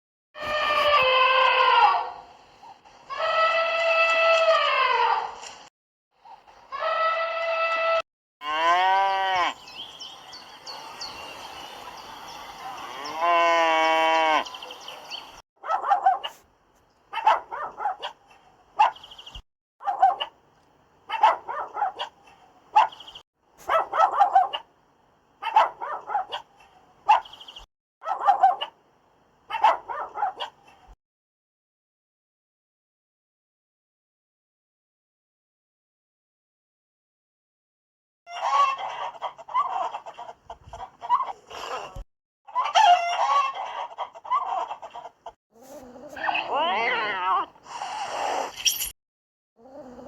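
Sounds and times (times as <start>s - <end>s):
cow mooing: 8.4s - 9.6s, 12.9s - 14.6s.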